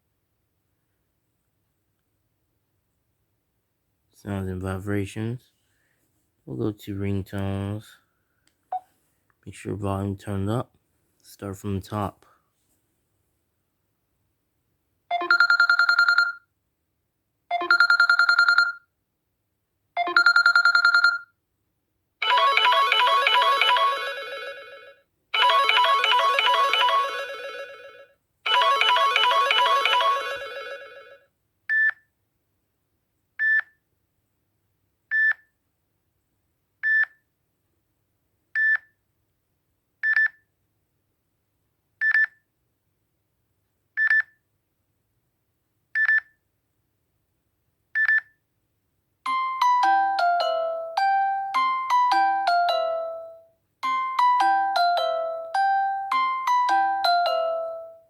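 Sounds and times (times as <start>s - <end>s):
short electronic ringtone: 15.1s - 16.4s, 17.5s - 18.8s, 22.2s - 31.2s
many-note chime ringtone: 22.2s - 31.2s, 49.3s - 58.0s.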